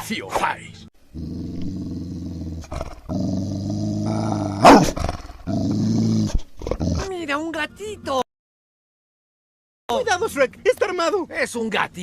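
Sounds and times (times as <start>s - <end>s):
dog growling: 1.1s - 7.1s.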